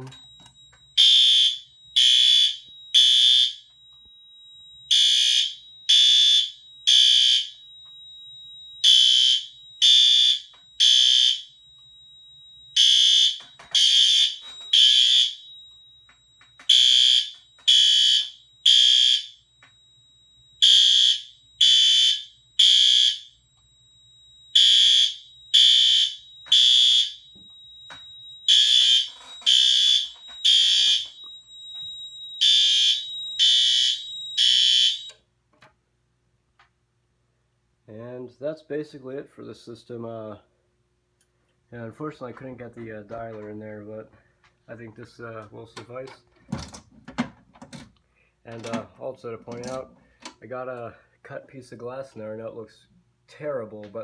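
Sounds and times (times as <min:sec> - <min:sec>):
fire alarm horn blasts: 0:00.0 - 0:35.2
faint steady high tone: 0:00.0 - 0:35.3.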